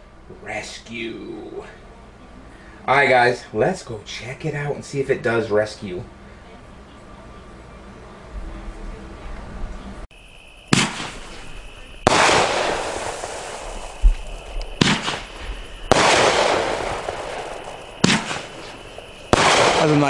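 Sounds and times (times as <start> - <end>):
firework shots: 10.7 - 20.0
low rumble: 11.0 - 19.8.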